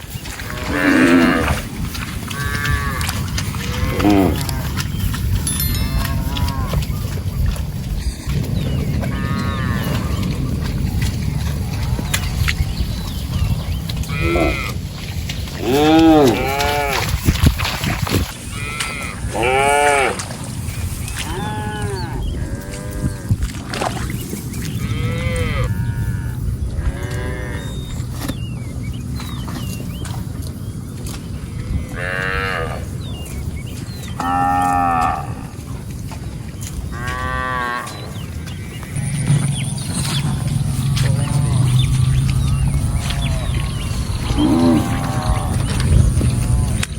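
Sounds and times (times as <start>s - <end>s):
cattle mooing: 0.4s - 1.7s, 2.3s - 5.0s, 5.8s - 7.0s, 8.5s - 10.6s, 14.0s - 14.8s, 15.6s - 17.1s, 18.5s - 20.3s, 21.2s - 23.4s, 24.7s - 28.0s, 31.4s - 33.0s, 34.2s - 35.6s, 36.9s - 46.9s
steady low rumble: 1.4s - 14.2s, 24.1s - 32.0s, 38.0s - 46.9s.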